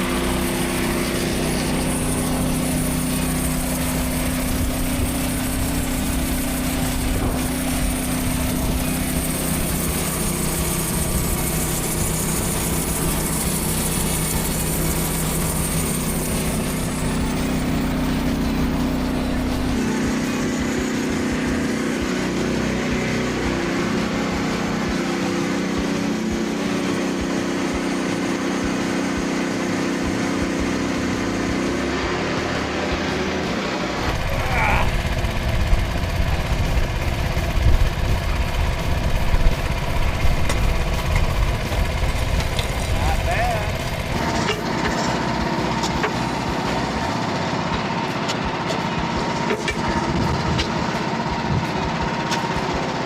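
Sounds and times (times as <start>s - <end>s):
thin high tone: 0.0s - 28.3s
band sawmill engine droning: 0.0s - 53.0s.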